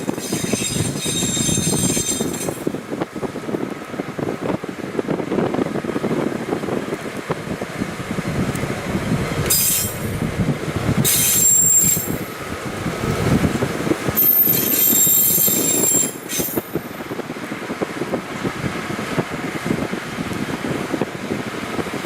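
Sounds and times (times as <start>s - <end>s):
metallic wheel squeals: 0.0s - 2.7s, 9.5s - 10.2s, 11.0s - 12.3s, 14.1s - 16.9s
rail motor car rumbling: 0.0s - 22.0s.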